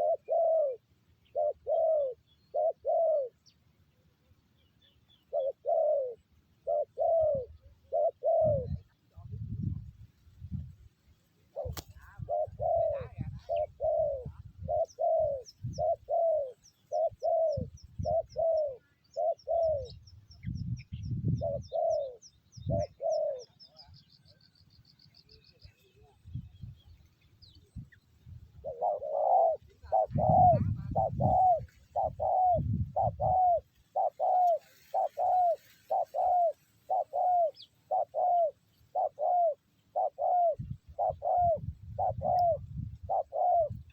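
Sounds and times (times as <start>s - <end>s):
doves cooing: 0.0s - 3.5s, 5.1s - 9.7s, 11.4s - 20.1s, 21.2s - 24.1s, 28.5s - 43.9s.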